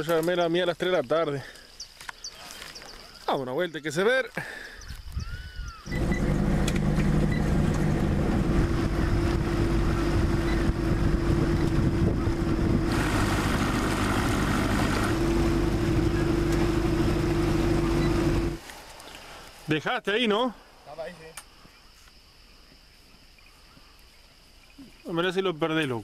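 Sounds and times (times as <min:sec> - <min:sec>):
wind on microphone: 0:05.0 - 0:06.2, 0:08.0 - 0:14.5
outboard motor running: 0:05.9 - 0:18.6
water rushing: 0:12.4 - 0:18.6.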